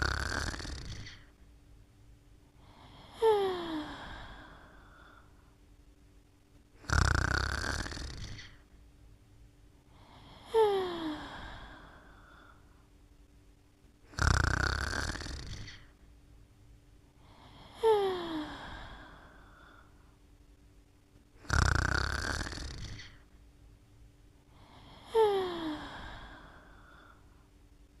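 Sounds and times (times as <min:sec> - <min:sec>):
person snoring: 0:00.0 - 0:01.4, 0:02.6 - 0:05.3, 0:06.8 - 0:08.7, 0:09.9 - 0:12.6, 0:14.1 - 0:16.0, 0:17.2 - 0:20.0, 0:21.4 - 0:23.3, 0:24.5 - 0:27.3.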